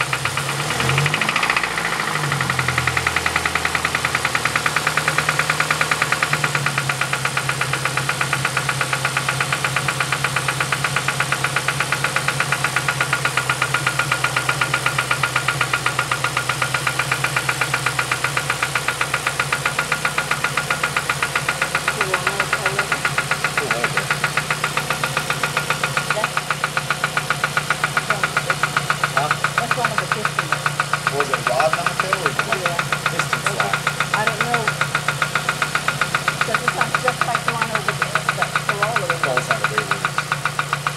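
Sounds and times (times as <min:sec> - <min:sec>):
car engine idling with knocking: 0:00.0 - 0:40.9.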